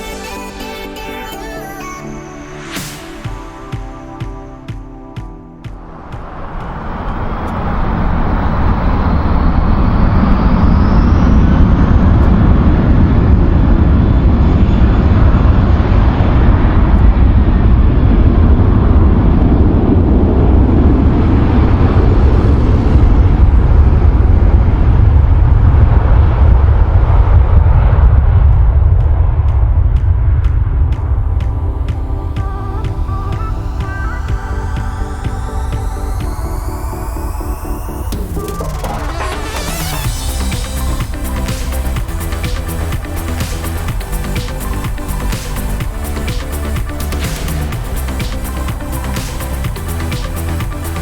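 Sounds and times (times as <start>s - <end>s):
electronic dance music: 0.0s - 8.8s, 29.9s - 51.0s
faint engine whine: 5.8s - 51.0s
jet engines roaring: 5.8s - 51.0s.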